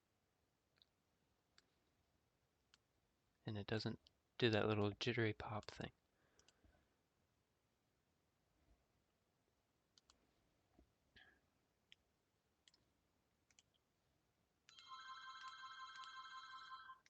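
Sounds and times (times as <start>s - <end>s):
computer mouse clicks: 6.4s - 6.7s, 10.0s - 10.2s, 13.5s - 13.8s.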